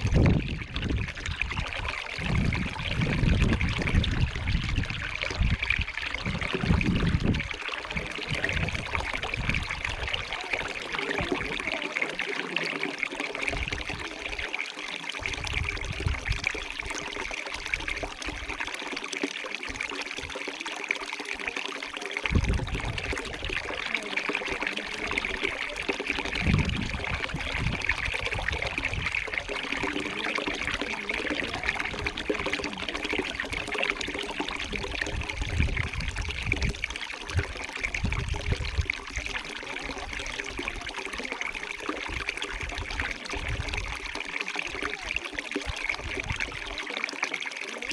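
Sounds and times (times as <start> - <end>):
stream trickling: 0.0 - 47.9.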